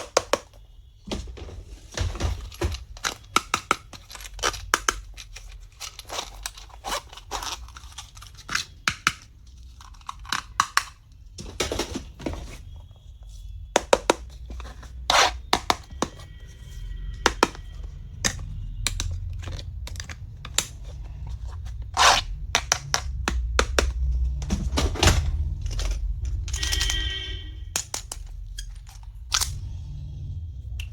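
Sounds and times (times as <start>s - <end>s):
plastic packaging crinkling: 1.7s - 8.8s.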